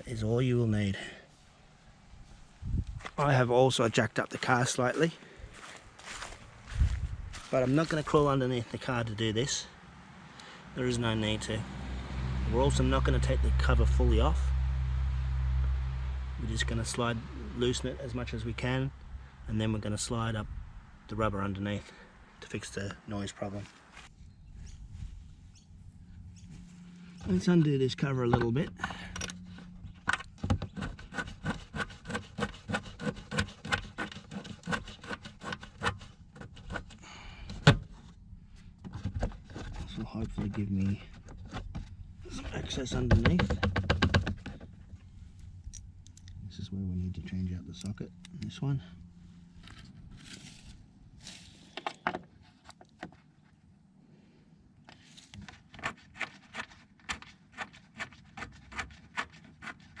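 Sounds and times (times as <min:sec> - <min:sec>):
rustling: 0:49.1 - 0:53.7.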